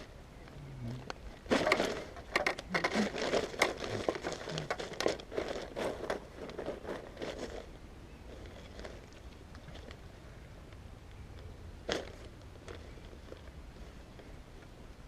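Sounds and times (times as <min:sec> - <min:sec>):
material rustling and crinkling: 0:01.4 - 0:10.0.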